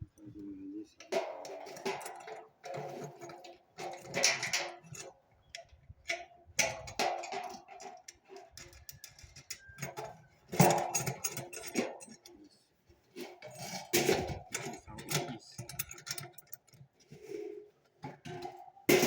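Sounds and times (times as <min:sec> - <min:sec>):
metal parts clinking: 0:08.8 - 0:12.3, 0:13.5 - 0:16.8.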